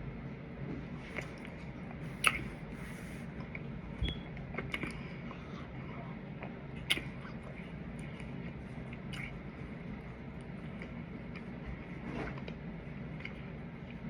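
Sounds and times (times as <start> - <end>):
steady low hum: 0.0 - 14.0
person chewing food: 1.0 - 3.8, 4.4 - 14.0
mouth clicks and smacks: 2.1 - 3.6, 6.8 - 8.3.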